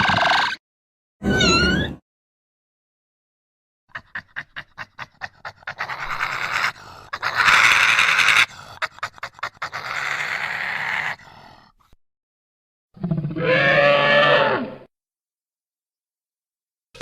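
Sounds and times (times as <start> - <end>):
animal panting breaths: 4.0 - 7.4, 8.4 - 9.8.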